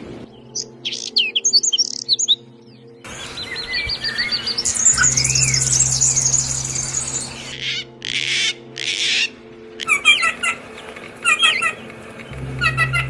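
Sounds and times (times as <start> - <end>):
songbird trilling and calling: 0.5 - 2.4, 3.1 - 10.4.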